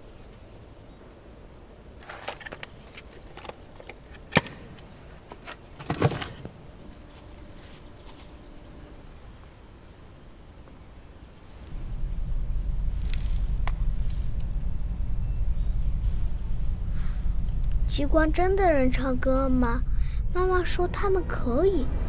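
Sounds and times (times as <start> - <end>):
rustle: 1.8 - 16.3.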